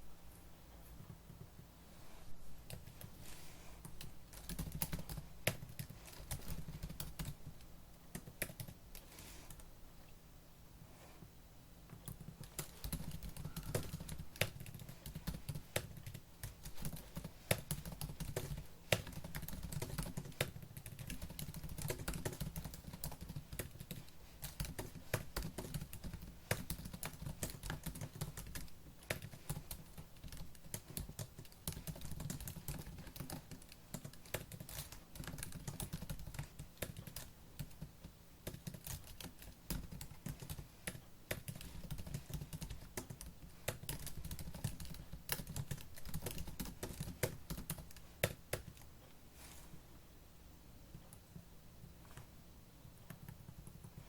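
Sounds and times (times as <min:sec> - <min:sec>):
typing on laptop keyboard: 0:03.9 - 0:09.6, 0:11.9 - 0:48.9, 0:52.9 - 0:54.0.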